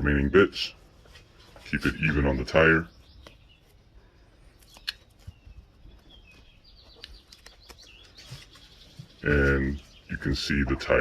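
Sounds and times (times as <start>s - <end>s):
faint bird chirps: 1.3s - 11.0s.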